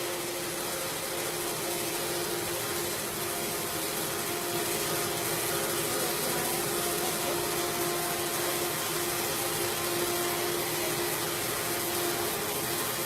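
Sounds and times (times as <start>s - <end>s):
router machine whine: 0.0s - 13.0s.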